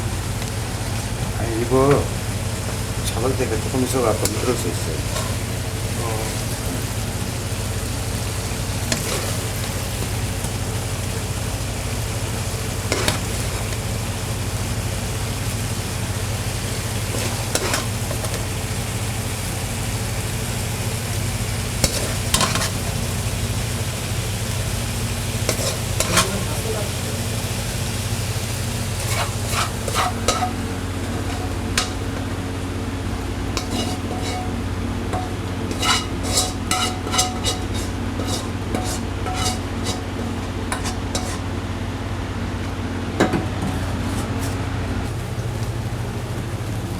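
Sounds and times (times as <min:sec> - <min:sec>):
food sizzling in a pan: 0:00.0 - 0:42.2, 0:45.0 - 0:46.9
spatula scraping a pan: 0:04.2 - 0:05.6, 0:08.9 - 0:09.7, 0:12.9 - 0:13.8, 0:17.1 - 0:18.4, 0:21.8 - 0:22.9, 0:25.4 - 0:26.5, 0:28.8 - 0:32.3, 0:33.5 - 0:41.5
spatula knocking on pan: 0:33.6 - 0:40.0.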